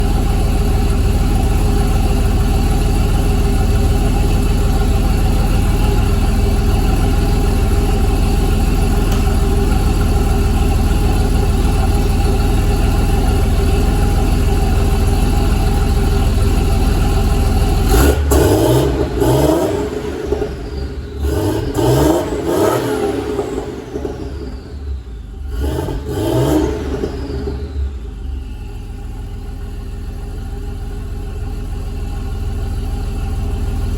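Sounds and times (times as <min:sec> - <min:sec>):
vehicle engine revving: 0:14.6 - 0:28.8.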